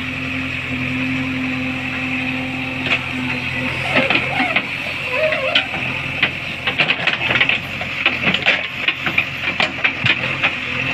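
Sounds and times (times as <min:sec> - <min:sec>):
backhoe knocks and clatters: 0:02.8 - 0:10.9.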